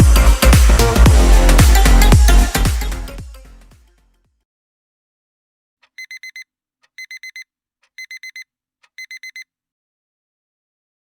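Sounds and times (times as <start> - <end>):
alarm clock beeping: 6.0 - 6.4, 7.0 - 7.4, 8.0 - 8.4, 9.0 - 9.4.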